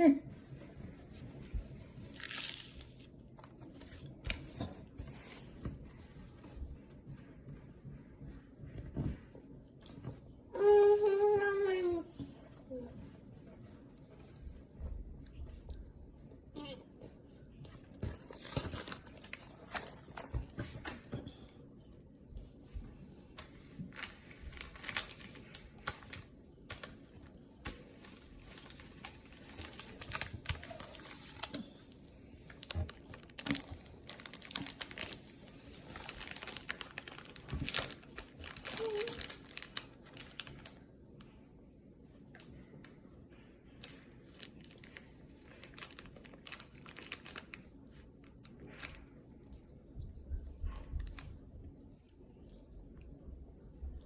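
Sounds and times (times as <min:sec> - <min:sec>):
snack packaging crackling: 0:02.0 - 0:04.5, 0:23.4 - 0:40.9, 0:43.9 - 0:49.1.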